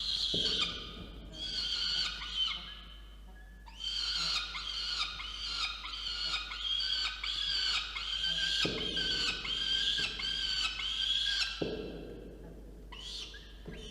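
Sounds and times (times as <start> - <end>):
falcon chicks begging calls: 0.0 - 2.8, 3.7 - 11.6.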